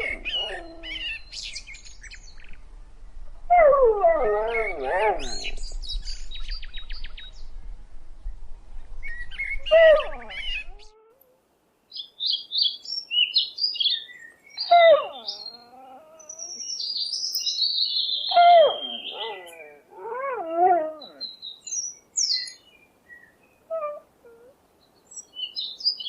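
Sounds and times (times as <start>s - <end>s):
wavering animal cries: 14.6s - 16.6s, 18.2s - 21.3s.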